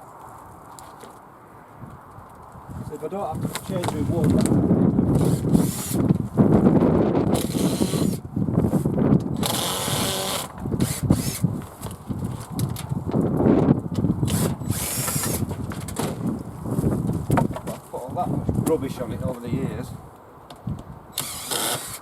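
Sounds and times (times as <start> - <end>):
cordless drill running: 7.4 - 8.2, 9.4 - 11.4, 14.3 - 15.4, 21.2 - 22.0.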